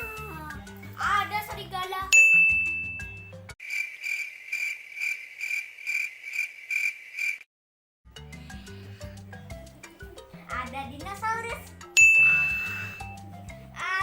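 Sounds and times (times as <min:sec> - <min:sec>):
child's voice: 0:00.0 - 0:02.2, 0:10.4 - 0:12.6, 0:13.6 - 0:14.0
bell-like ding: 0:02.2 - 0:03.3, 0:12.0 - 0:12.7.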